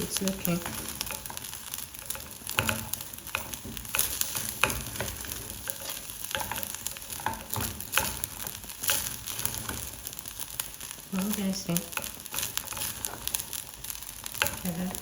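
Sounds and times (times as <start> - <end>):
food sizzling in a pot: 0.0 - 15.0
spoon scraping and knocking pot: 0.6 - 10.0.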